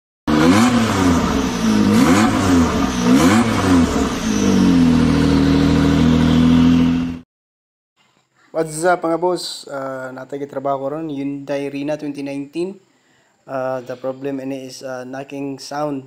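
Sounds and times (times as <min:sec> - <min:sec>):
car engine revving: 0:00.3 - 0:07.2.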